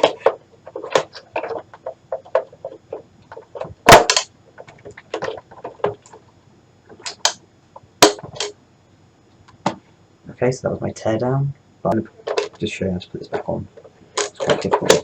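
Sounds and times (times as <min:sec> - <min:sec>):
plastic clicks and knocks: 0:00.0 - 0:06.2, 0:14.2 - 0:15.0
loud sharp plastic snap: 0:07.0 - 0:07.4.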